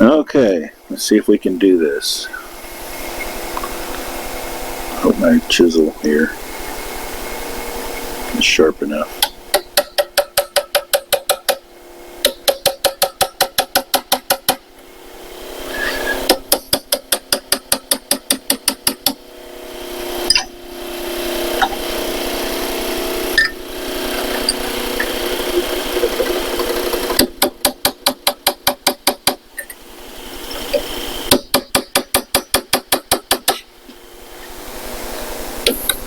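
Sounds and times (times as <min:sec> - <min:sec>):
steady hum: 0:00.0 - 0:36.0
hammer tapping chisel on metal: 0:12.2 - 0:14.6, 0:30.7 - 0:33.7.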